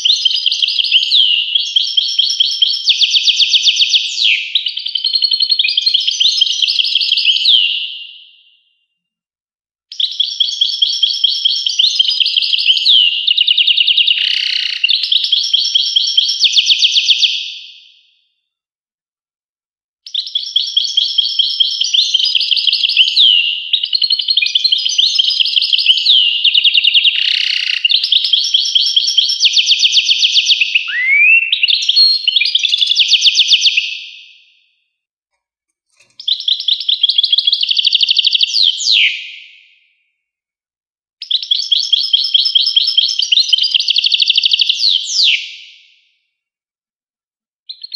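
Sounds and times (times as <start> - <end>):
goldfinch twittering trills: 30.9 - 32.4.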